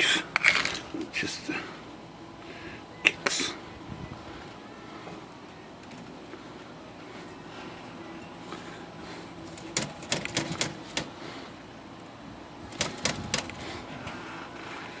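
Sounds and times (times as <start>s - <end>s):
typewriter mechanism clicking: 9.6s - 11.1s, 12.7s - 13.6s.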